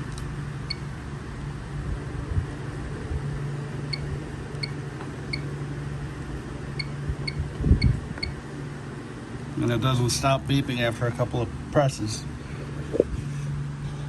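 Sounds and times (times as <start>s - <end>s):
steady low hum: 0.0s - 14.0s
keypad buzzer beeps: 3.9s - 5.5s, 6.8s - 8.4s.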